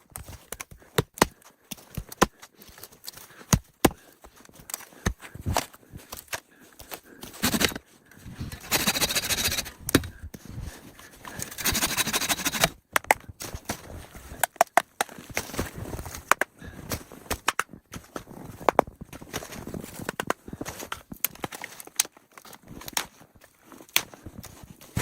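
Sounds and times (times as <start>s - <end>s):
long scraping rushes: 7.4s - 7.8s, 8.5s - 9.8s, 11.4s - 12.7s.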